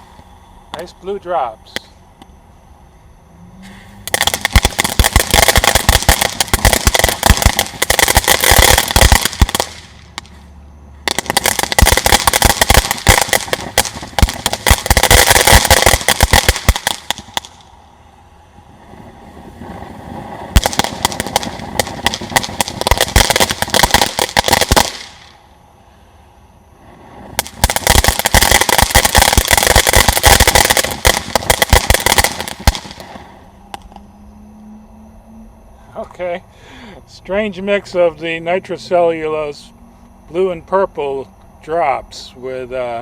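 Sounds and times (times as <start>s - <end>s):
fountain firework crackling: 4.0s - 25.6s, 26.7s - 34.0s.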